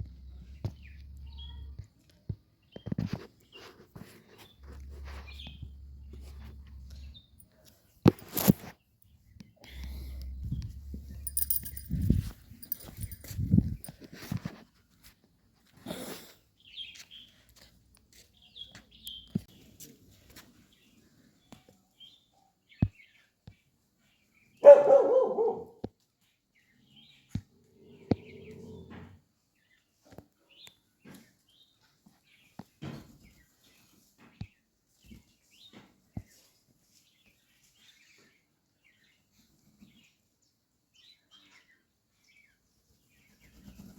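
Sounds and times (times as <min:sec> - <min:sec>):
dog barking: 0:24.6 - 0:25.8.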